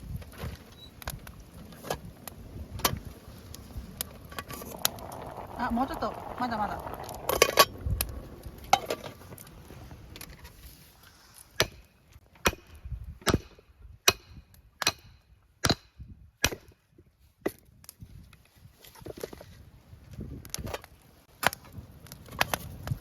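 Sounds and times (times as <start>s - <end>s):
blade chopping wood: 11.6s - 16.8s.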